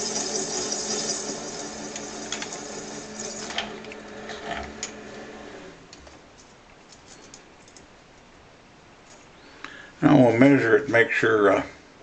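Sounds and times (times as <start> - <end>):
small lathe humming: 0.0 - 5.7.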